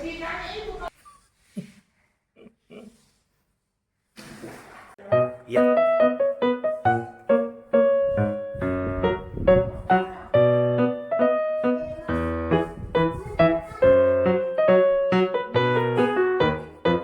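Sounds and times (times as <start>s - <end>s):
piano music: 5.0s - 17.0s.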